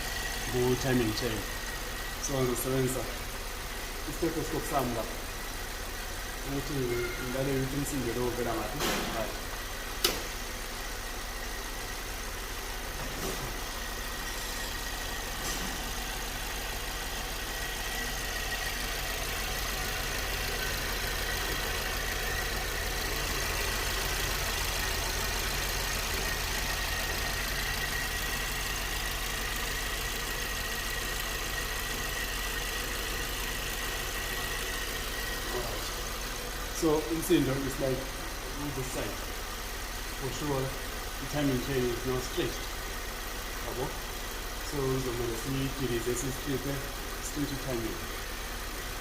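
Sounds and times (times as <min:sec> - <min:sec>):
car engine idling: 0:00.0 - 0:49.0
thin high tone: 0:06.8 - 0:07.5.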